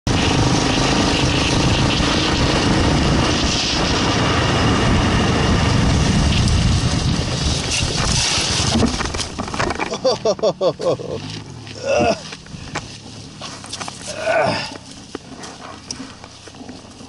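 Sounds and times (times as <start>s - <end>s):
wind rush on microphone: 0.1s - 9.5s
motorcycle engine running: 0.1s - 17.0s.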